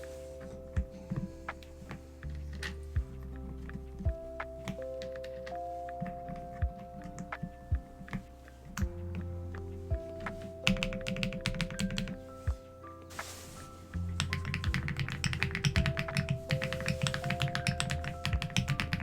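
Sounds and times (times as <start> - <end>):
soft background music: 0.0 - 19.0
mechanical keyboard typing: 10.6 - 12.2, 14.2 - 19.0.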